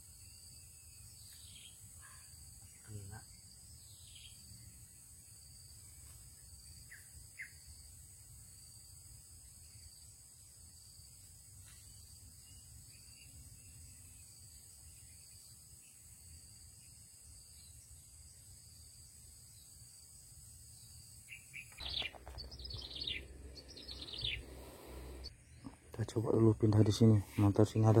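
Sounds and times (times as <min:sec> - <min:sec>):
insects droning: 0:00.0 - 0:28.0
bird chirps: 0:00.2 - 0:05.0, 0:06.7 - 0:07.8, 0:20.8 - 0:26.2.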